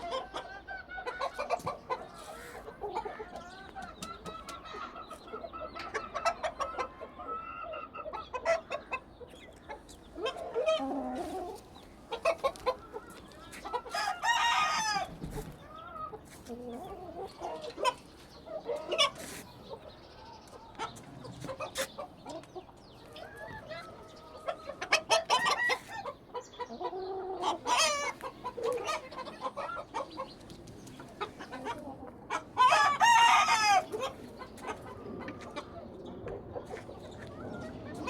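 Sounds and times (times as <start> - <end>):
chickens clucking: 0.0 - 38.0
rooster crowing: 13.9 - 15.1, 32.6 - 33.9.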